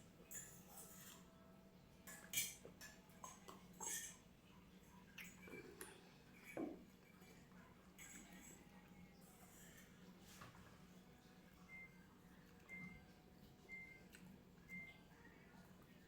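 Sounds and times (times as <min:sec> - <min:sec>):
cutlery clinking on plate: 0:02.1 - 0:04.2, 0:05.2 - 0:07.4, 0:08.0 - 0:08.6.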